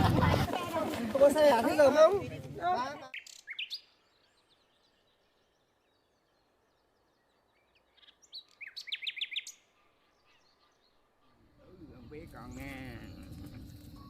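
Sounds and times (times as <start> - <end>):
faint outdoor background: 0.0 - 14.0
small bird chirping: 3.1 - 14.0.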